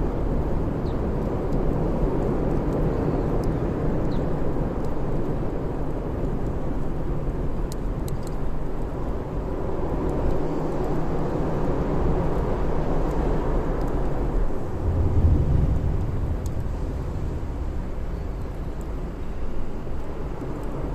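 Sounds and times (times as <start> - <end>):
burning wood crackling: 0.1 - 20.9
fire low rushing rumble: 8.8 - 20.9.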